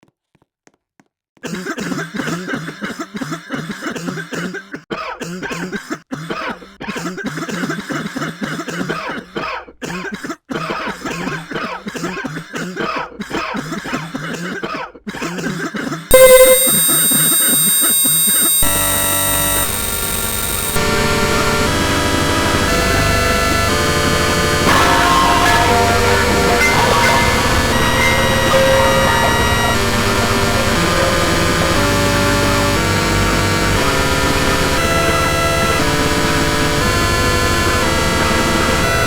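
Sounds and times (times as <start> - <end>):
person coughing: 1.4 - 16.1
electronic synthesizer tones: 16.1 - 39.0.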